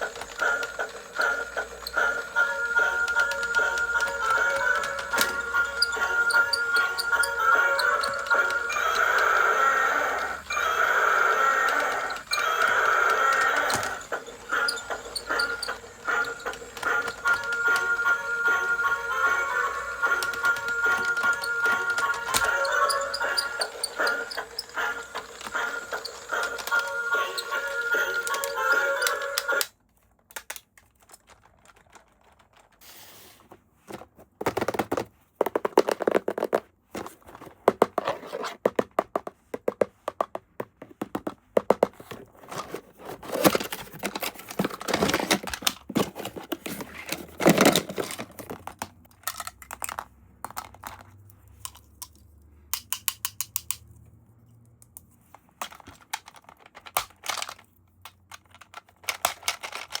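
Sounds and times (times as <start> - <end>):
plastic and cardboard tearing: 42.0 - 48.7.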